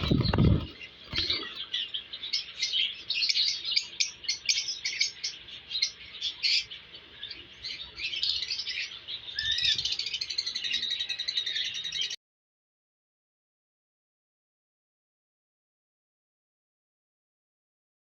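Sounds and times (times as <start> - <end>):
parrots chirping: 0.0 - 12.2.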